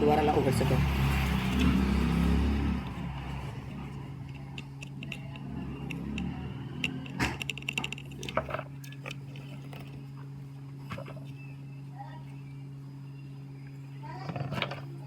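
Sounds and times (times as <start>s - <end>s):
low electrical hum: 0.0s - 15.0s
metal tools tapping circuit board: 4.3s - 8.1s.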